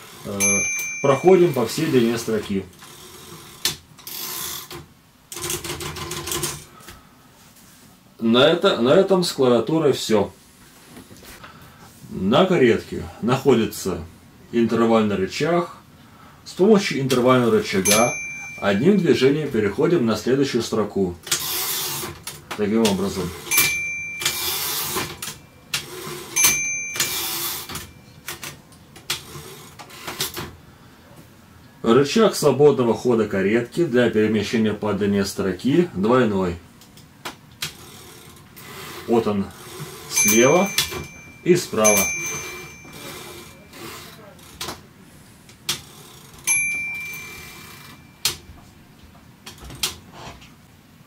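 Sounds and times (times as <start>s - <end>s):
typewriter bell ding: 0.4s - 2.6s, 17.8s - 19.4s, 22.8s - 28.5s, 40.1s - 44.5s, 46.4s - 48.6s
typewriter carriage rattling: 1.4s - 6.7s, 37.6s - 44.8s
typewriter carriage clicks and knocks: 3.6s - 6.7s.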